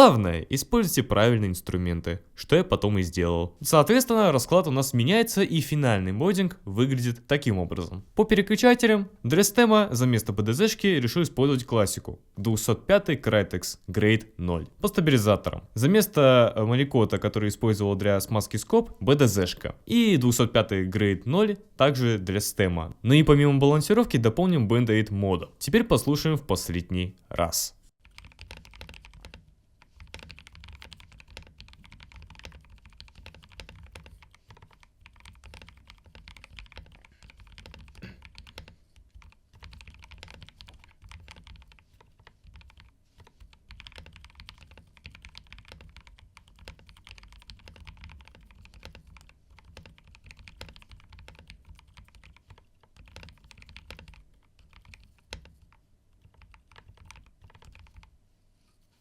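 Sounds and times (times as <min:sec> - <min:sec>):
mechanical keyboard typing: 0:28.0 - 0:58.1.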